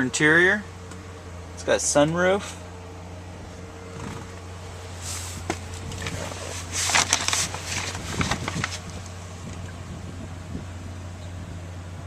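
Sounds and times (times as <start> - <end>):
low vehicle cabin hum: 0.0 - 12.0
rustling and clicking handling: 5.3 - 9.8.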